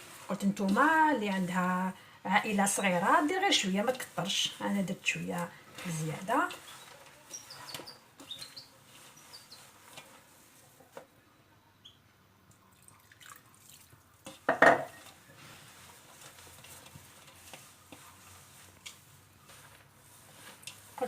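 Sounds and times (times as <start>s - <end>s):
hands kneading dough: 0.0s - 11.1s, 14.2s - 21.0s
faint scraping and clicks: 15.0s - 21.0s.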